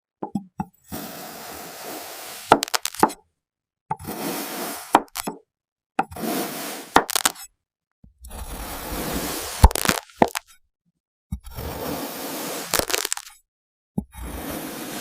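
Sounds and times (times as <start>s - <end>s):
blade slicing through sand: 0.9s - 3.0s, 4.0s - 5.2s, 6.2s - 7.4s, 8.4s - 10.4s, 11.6s - 13.3s, 14.3s - 15.0s.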